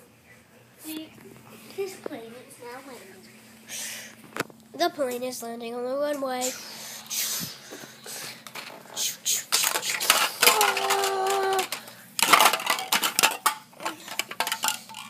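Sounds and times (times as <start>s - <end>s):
plastic toy pieces clicking and clattering: 8.5s - 15.0s.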